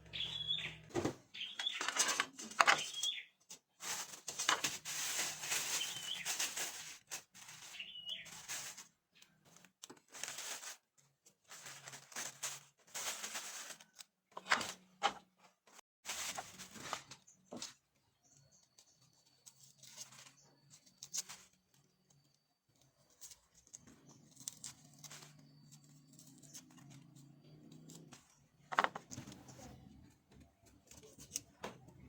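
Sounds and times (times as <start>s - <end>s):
rustling and tearing: 3.7s - 14.9s, 16.1s - 17.7s, 22.9s - 29.7s.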